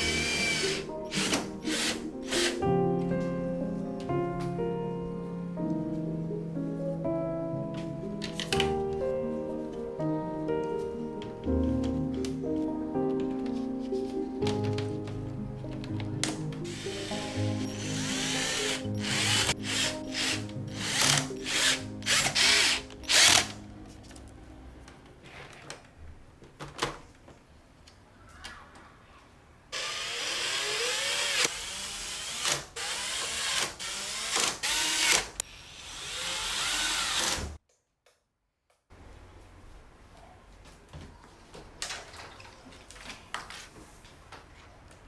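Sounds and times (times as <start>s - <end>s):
power drill whining in bursts: 0.0s - 2.6s, 16.7s - 23.6s, 29.8s - 37.5s
soft background music: 0.0s - 26.2s.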